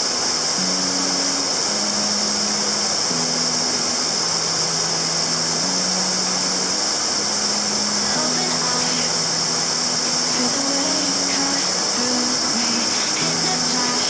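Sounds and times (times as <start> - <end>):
low sustained background music: 0.0 - 14.0
waterfall rushing: 0.0 - 14.0.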